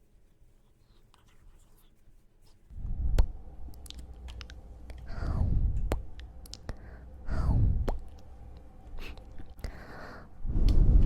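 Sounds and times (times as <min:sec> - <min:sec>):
slow rubbing swishes: 0:10.3 - 0:11.0.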